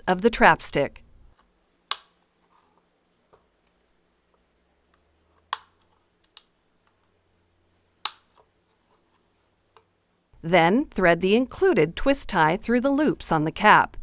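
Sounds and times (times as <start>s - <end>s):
plastic parts snapping clicks: 1.9s - 2.2s.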